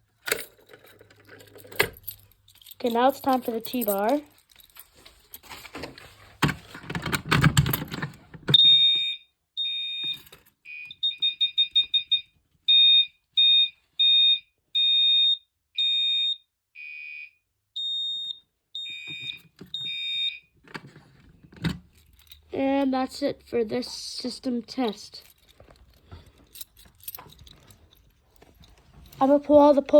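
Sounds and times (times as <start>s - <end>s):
shrill electronic alarm beeps: 8.6s - 20.5s
fire alarm pull station clatter: 18.8s - 20.9s.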